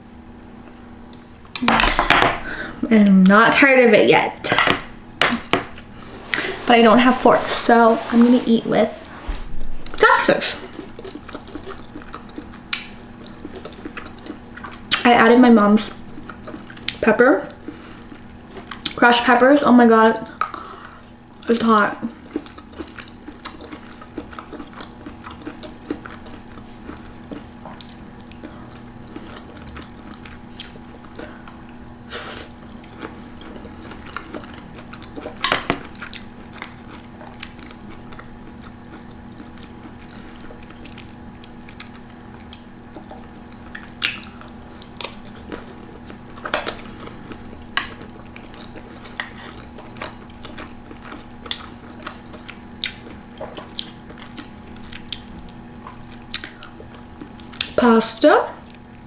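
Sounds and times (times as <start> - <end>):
faint steady hum: 0.0 - 59.0
chewing: 10.6 - 15.0, 15.9 - 19.0, 20.3 - 57.8.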